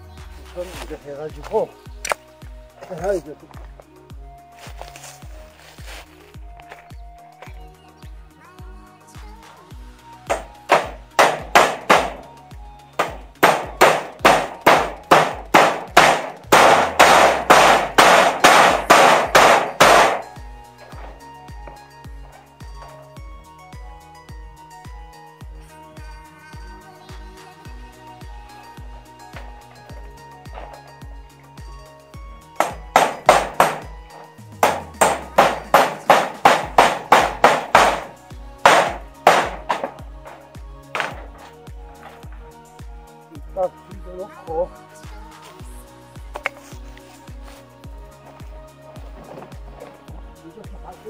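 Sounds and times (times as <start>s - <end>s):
hammer strikes ringing: 10.3s - 12.3s, 13.0s - 23.0s, 29.3s - 31.0s, 32.6s - 41.4s
low musical beat: 10.3s - 24.0s, 27.2s - 51.0s.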